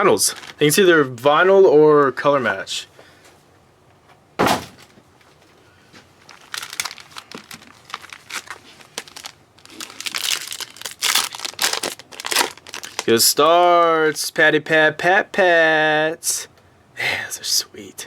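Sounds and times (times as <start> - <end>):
wrapper crinkling and rustling: 0.0 - 0.9, 6.2 - 13.4.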